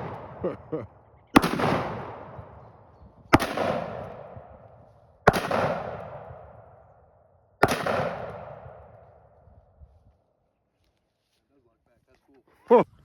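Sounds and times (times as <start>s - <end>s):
shotgun blasts: 0.0s - 0.6s, 1.3s - 6.8s, 7.6s - 9.2s
gunshot echo: 0.0s - 0.7s, 1.3s - 6.9s, 7.6s - 9.3s.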